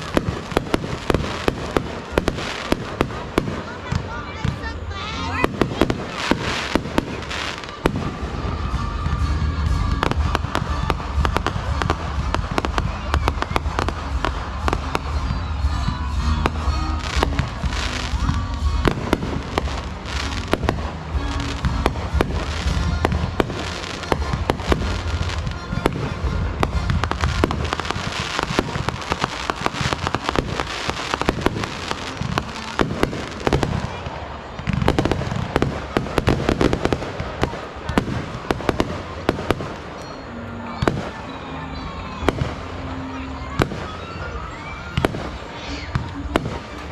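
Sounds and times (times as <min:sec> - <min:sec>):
fireworks bangs and crackling: 0:00.0 - 0:46.9
music with steady bass: 0:00.0 - 0:46.9.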